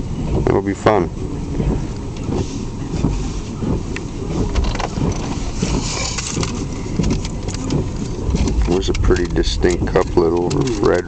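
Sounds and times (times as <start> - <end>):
car engine rumbling: 0.0 - 11.0.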